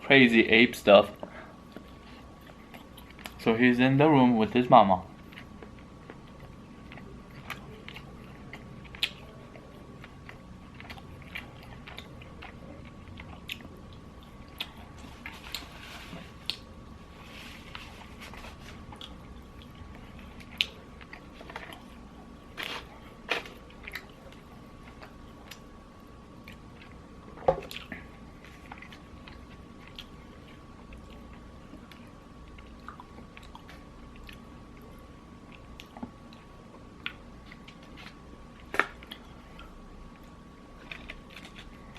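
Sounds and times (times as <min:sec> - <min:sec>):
soft chewing: 0:01.1 - 0:03.5, 0:05.0 - 0:41.9
crunching fried chicken: 0:40.7 - 0:41.9.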